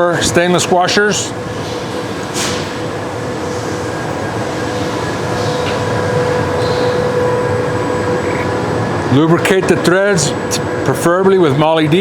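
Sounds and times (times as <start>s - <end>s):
mechanical hum with whine: 0.0s - 12.0s.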